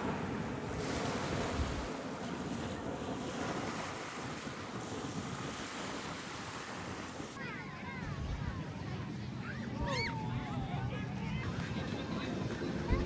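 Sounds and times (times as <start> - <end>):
sea water rushing: 0.0 - 7.4
wind buffeting microphone: 0.0 - 7.4.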